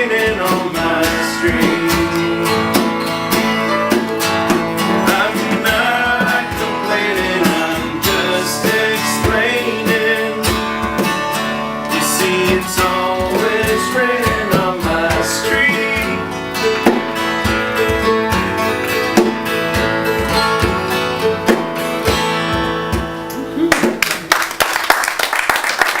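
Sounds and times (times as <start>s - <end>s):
person singing: 0.0s - 19.4s
country song on acoustic guitars: 0.0s - 24.0s
audience applause: 23.7s - 26.0s.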